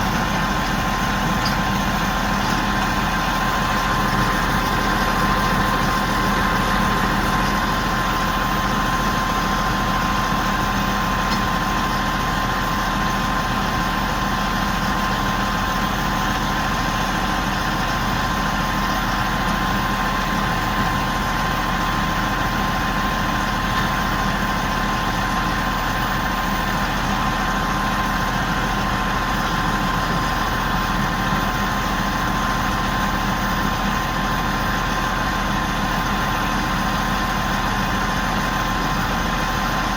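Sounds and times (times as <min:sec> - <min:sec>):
crane engine idling: 0:00.0 - 0:39.9.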